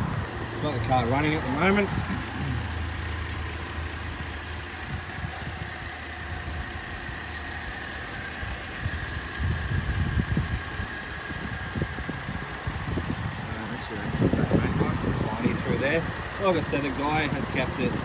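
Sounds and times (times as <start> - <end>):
irregular low rumbles: 0.0 - 7.7
car engine idling: 0.0 - 18.0.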